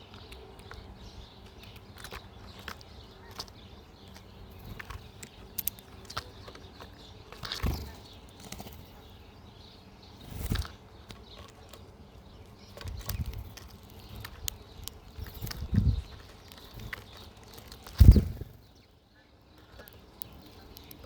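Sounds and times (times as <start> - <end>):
birds chirping: 0.0 - 21.0
wings flapping: 7.3 - 9.1, 10.2 - 10.8, 15.2 - 18.7.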